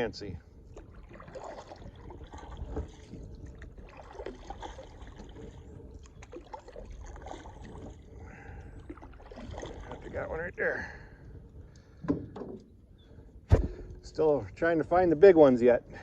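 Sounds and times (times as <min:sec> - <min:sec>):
water lapping: 0:00.0 - 0:12.1.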